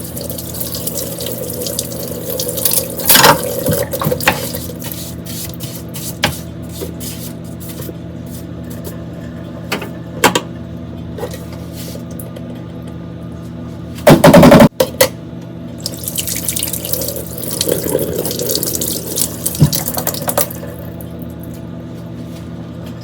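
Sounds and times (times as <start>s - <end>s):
tap running water into sink: 0.0s - 5.0s, 15.9s - 21.0s.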